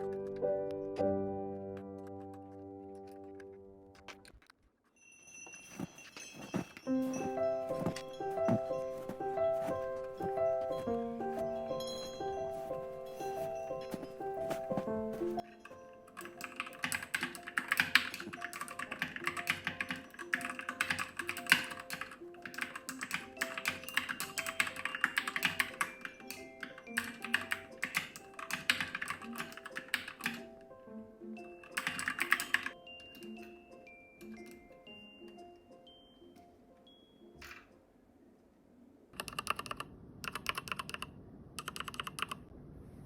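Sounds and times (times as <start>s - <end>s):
background music: 0.0s - 4.4s, 6.8s - 38.2s
mechanical keyboard typing: 16.2s - 30.4s, 31.7s - 32.8s, 39.2s - 42.4s.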